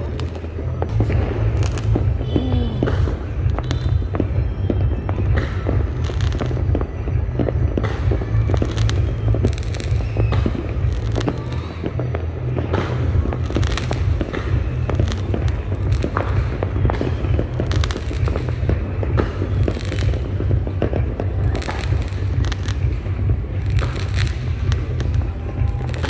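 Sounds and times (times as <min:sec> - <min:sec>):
distant fireworks booms: 0:00.0 - 0:26.0
fireworks bangs and crackles: 0:00.0 - 0:26.0.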